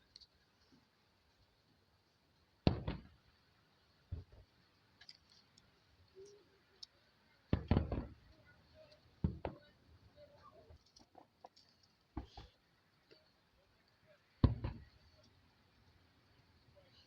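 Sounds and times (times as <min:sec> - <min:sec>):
fireworks bangs: 0:02.7 - 0:03.2, 0:07.5 - 0:08.4, 0:09.2 - 0:10.4, 0:14.4 - 0:15.0.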